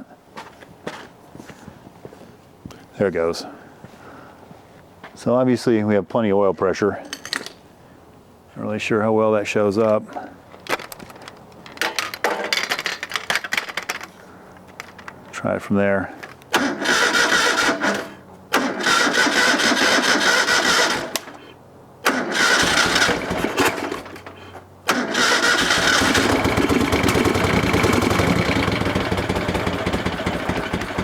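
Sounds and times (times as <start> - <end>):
motorcycle engine cranking: 9.8 - 15.4, 16.1 - 21.4, 22.0 - 31.0
motorcycle engine running: 25.8 - 31.0.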